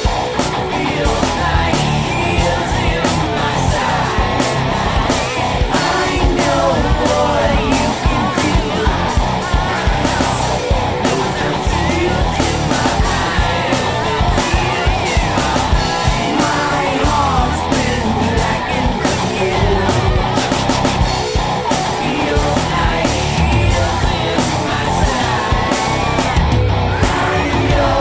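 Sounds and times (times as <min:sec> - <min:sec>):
driving drum beat: 0:00.0 - 0:28.0
loud rock music: 0:00.0 - 0:28.0
shouted or sung vocals: 0:00.0 - 0:28.0.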